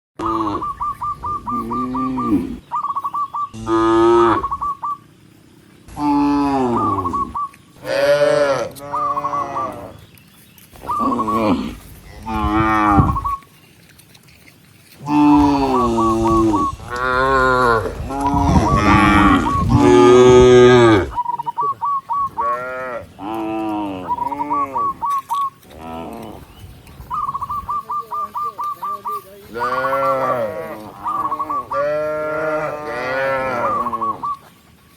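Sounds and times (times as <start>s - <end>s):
cattle mooing: 0.2s - 2.6s, 3.5s - 4.7s, 5.9s - 10.0s, 10.8s - 13.4s, 15.0s - 21.2s, 22.3s - 25.0s, 29.5s - 34.4s.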